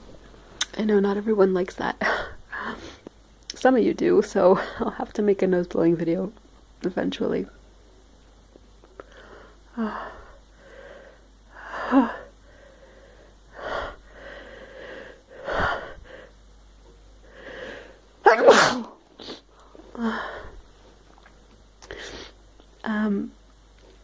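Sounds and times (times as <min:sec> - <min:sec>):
woman sneezing: 0:18.2 - 0:19.4.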